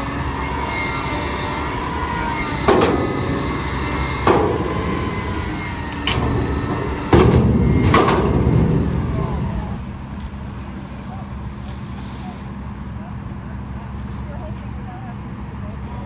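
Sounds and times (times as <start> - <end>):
garbage truck engine and hydraulics: 0.0 - 14.5
sharp metal bangs: 0.6 - 11.6.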